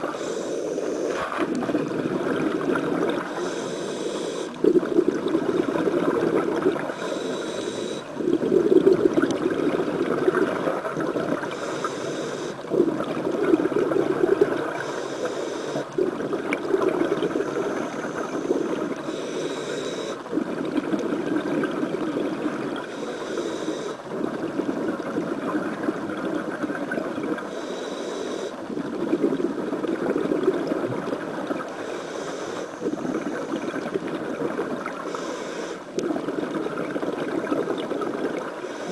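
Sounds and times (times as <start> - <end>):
exhaled air bubbling: 0.0 - 38.9
regulator inhalation hiss: 0.1 - 1.3, 3.2 - 4.7, 6.7 - 8.3, 11.4 - 12.7, 14.6 - 16.0, 17.2 - 20.3, 22.9 - 24.1, 27.4 - 28.6, 31.7 - 33.7, 35.0 - 35.9, 38.6 - 38.9.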